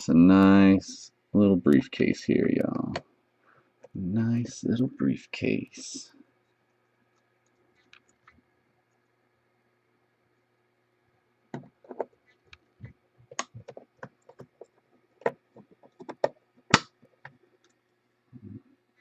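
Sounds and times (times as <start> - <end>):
sharp plastic snap: 16.7 - 16.9.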